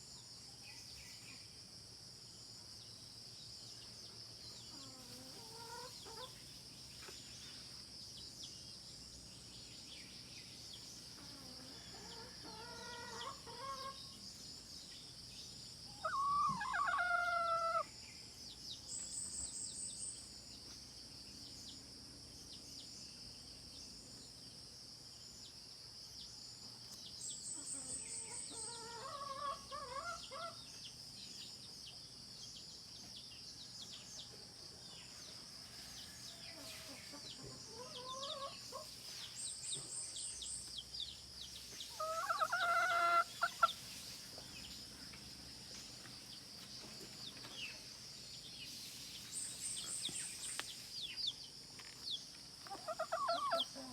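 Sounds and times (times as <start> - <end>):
insects droning: 0.0 - 53.9
chickens calling: 11.9 - 14.0, 16.0 - 17.9, 27.6 - 30.7, 36.5 - 39.0, 41.6 - 44.5, 52.6 - 53.9.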